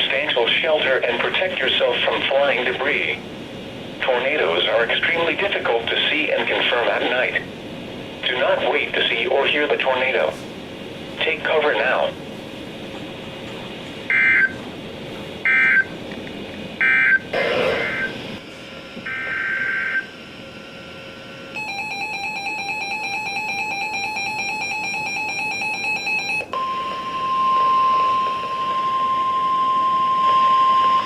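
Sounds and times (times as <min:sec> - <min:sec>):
buzzing two-tone attention signal: 0:14.1 - 0:14.6, 0:15.5 - 0:15.9, 0:16.8 - 0:18.2, 0:19.0 - 0:31.0.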